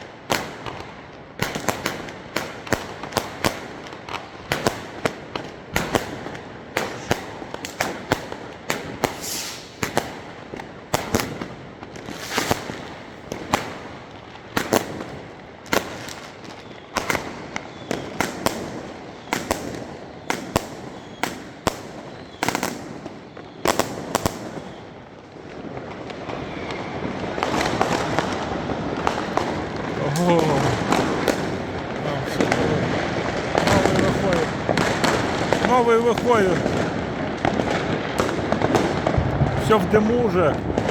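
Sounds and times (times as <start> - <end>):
fireworks banging: 0.2 - 16.3, 25.4 - 40.9.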